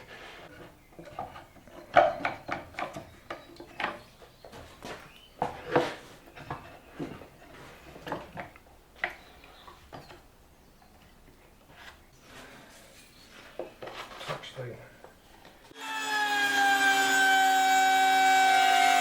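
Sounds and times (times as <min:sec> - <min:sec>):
wooden and metal parts clattering: 0:00.4 - 0:12.0.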